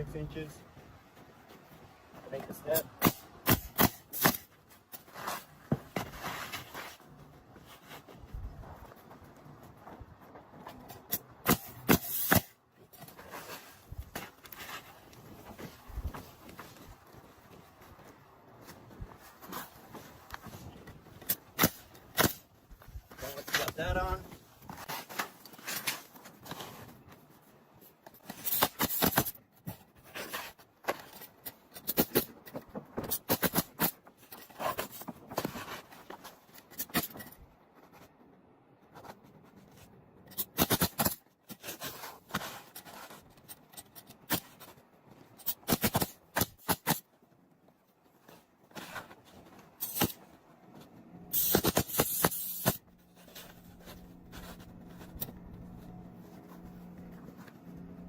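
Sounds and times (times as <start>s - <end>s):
shingles scraping: 2.8s - 8.2s, 9.7s - 38.2s, 48.0s - 58.0s.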